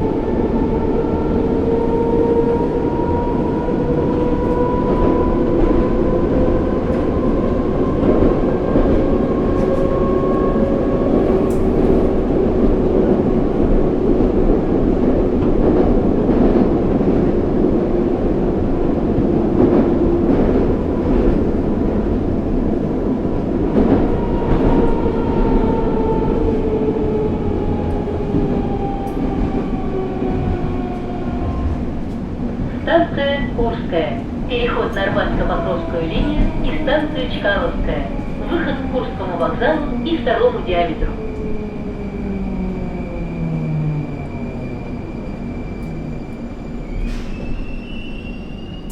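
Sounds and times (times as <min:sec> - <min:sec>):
traction drive whine: 0:27.6 - 0:32.8
wheel and track rumble: 0:27.8 - 0:32.8.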